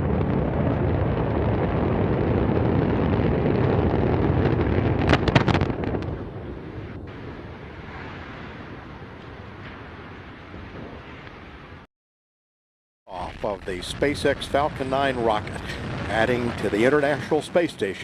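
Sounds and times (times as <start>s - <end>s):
rocket launch rumble: 0.0s - 11.9s, 13.1s - 18.0s
sharp cracks: 2.5s - 7.3s.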